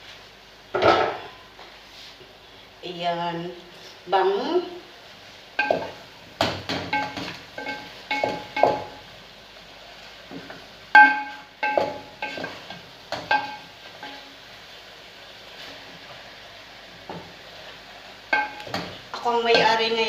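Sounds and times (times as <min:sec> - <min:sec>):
metal spoon clanking in pot: 0:06.6 - 0:08.9, 0:11.0 - 0:14.2.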